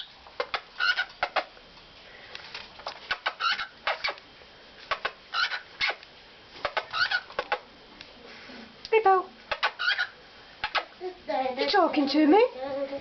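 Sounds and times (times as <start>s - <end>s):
birds chirping and squawking: 0.0s - 1.6s, 2.8s - 4.2s, 4.8s - 7.7s, 9.4s - 11.0s.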